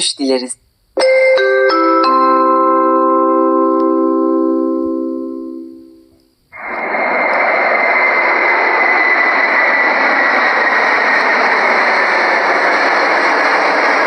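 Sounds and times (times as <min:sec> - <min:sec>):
faint high whine: 0:02.4 - 0:14.0
jet engines and airflow rushing: 0:06.5 - 0:14.0.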